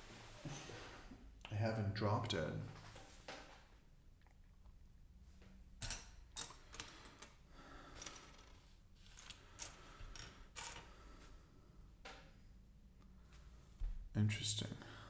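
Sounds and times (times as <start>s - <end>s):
plastic pieces clicking and rustling: 7.9s - 10.9s.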